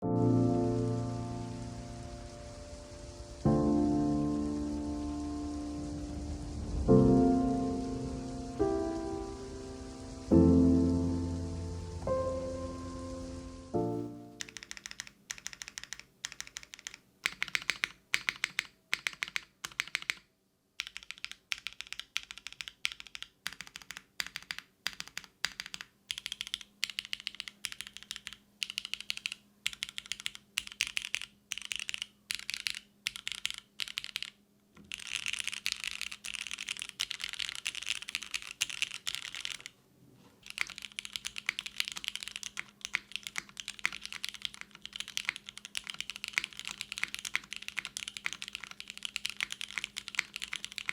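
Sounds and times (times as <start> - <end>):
typing on a mechanical keyboard: 14.1 - 39.8, 40.4 - 50.9.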